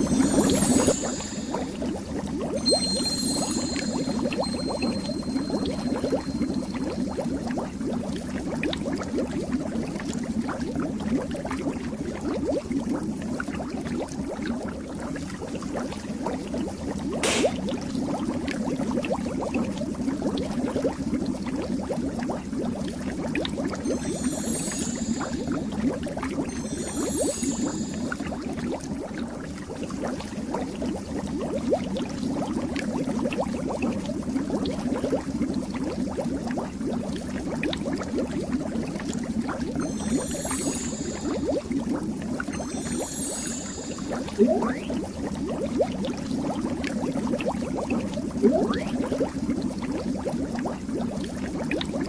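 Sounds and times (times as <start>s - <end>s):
high twinkling shimmer: 0.0s - 7.3s, 23.8s - 28.8s, 39.7s - 45.1s
underwater bubbling: 0.0s - 52.0s.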